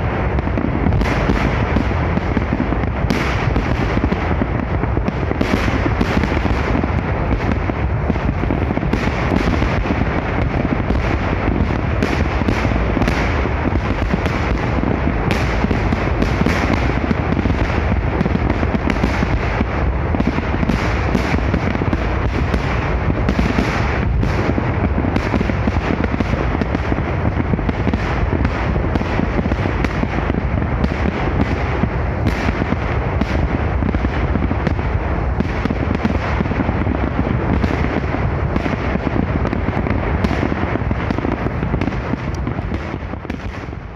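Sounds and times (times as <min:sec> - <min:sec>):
fireworks barrage: 0:00.0 - 0:43.9.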